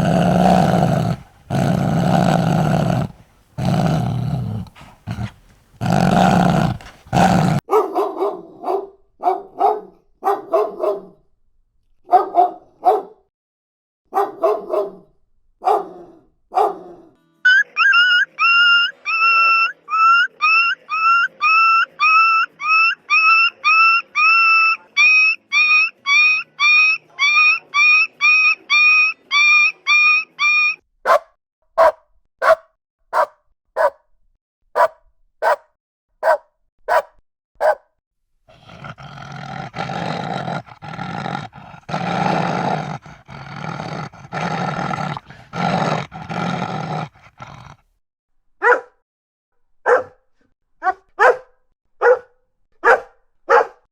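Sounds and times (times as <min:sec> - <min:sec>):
dog growling: 0:00.0 - 0:07.6, 0:38.5 - 0:47.9
dog yelping: 0:00.0 - 0:11.0, 0:17.5 - 0:31.2, 0:31.8 - 0:32.6, 0:33.2 - 0:34.0, 0:34.8 - 0:35.6, 0:36.2 - 0:37.8, 0:48.6 - 0:48.9, 0:49.9 - 0:50.2, 0:50.8 - 0:51.4, 0:52.0 - 0:53.8
dog barking: 0:00.0 - 0:11.2, 0:12.0 - 0:13.3, 0:14.1 - 0:17.1, 0:31.0 - 0:34.0, 0:34.8 - 0:37.9, 0:48.6 - 0:49.0, 0:49.8 - 0:50.2, 0:50.8 - 0:53.9.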